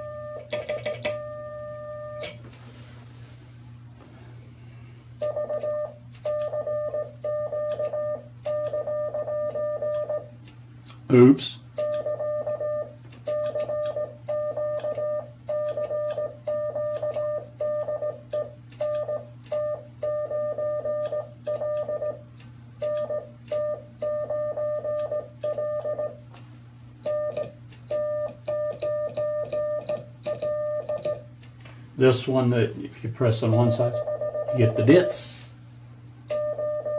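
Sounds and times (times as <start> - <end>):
morse code beeps: 0.0 - 2.3, 5.2 - 10.3, 11.8 - 22.2, 22.8 - 26.2, 27.0 - 31.2, 33.5 - 35.2, 36.3 - 36.9.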